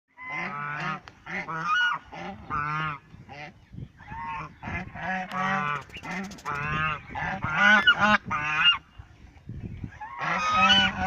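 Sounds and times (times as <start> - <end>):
waterfowl calling: 0.1 - 8.9.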